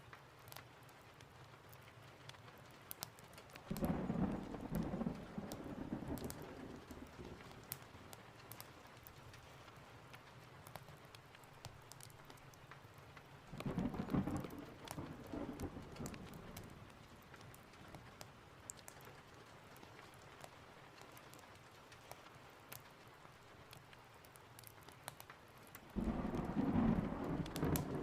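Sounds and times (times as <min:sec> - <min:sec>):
small sharp ticks and crackles: 0:00.0 - 0:28.0
steady rain: 0:00.0 - 0:28.0
thunder rolling: 0:03.7 - 0:07.7, 0:13.6 - 0:16.7, 0:26.0 - 0:28.0.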